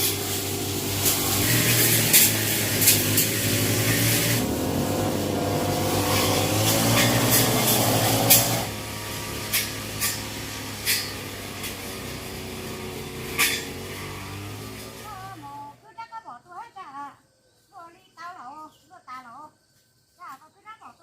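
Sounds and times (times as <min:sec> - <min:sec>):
hiss: 0:00.0 - 0:15.2
small motor running: 0:00.0 - 0:15.8.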